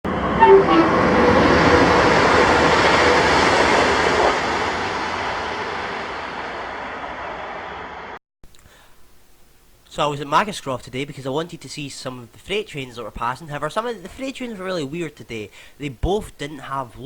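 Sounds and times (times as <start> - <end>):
short tones: 0.4 - 1.6.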